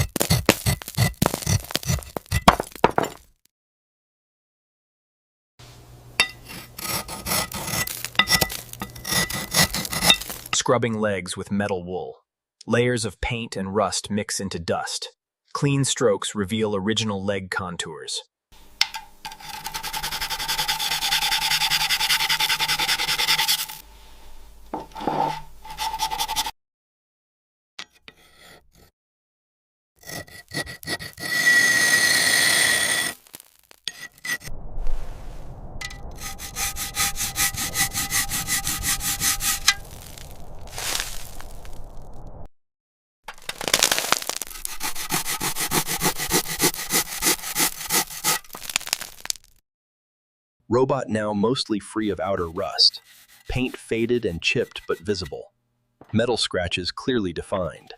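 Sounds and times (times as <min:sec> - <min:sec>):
metal wool scrubbing metal: 0:06.2 - 0:10.5, 0:18.9 - 0:23.8, 0:36.2 - 0:40.0, 0:44.5 - 0:48.6, 0:52.0 - 0:55.5.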